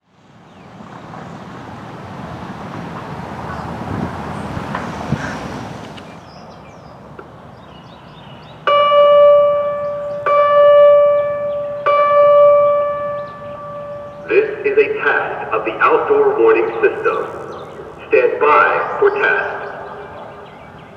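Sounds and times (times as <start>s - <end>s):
ringing chime tones over loudspeakers: 8.8s - 14.6s, 16.0s - 20.2s
steady background noise: 13.4s - 20.9s.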